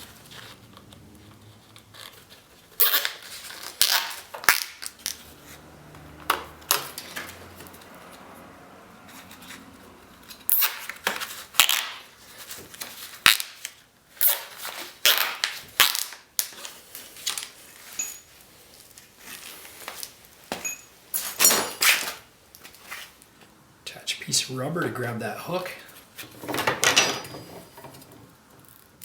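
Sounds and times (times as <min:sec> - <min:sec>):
scratchy rustling: 0:00.0 - 0:04.3.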